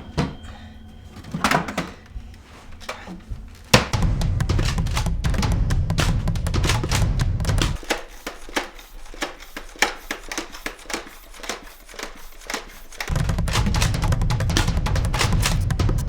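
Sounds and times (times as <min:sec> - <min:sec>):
toy blasters clicking and snapping: 0:03.7 - 0:16.0
drum-heavy backing music: 0:03.9 - 0:07.9, 0:13.1 - 0:16.0.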